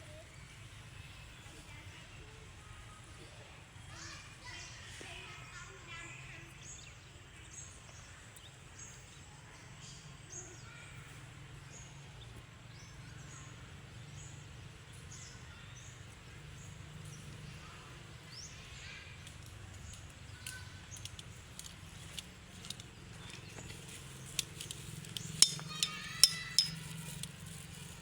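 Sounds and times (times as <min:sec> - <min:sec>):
sharp clicks: 0:24.2 - 0:27.3.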